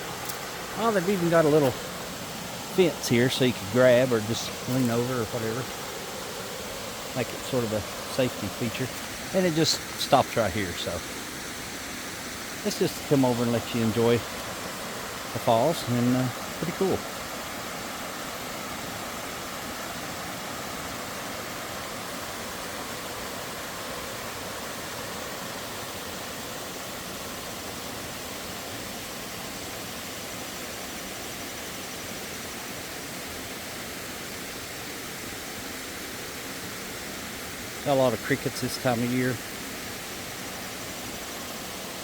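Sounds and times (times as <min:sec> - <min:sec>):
faint crickets chirping: 0:00.0 - 0:29.9
waterfall rushing: 0:00.0 - 0:42.0.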